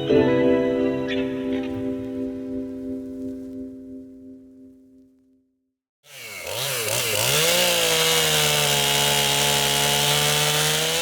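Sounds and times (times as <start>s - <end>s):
chainsaw engine revving: 6.0s - 11.0s.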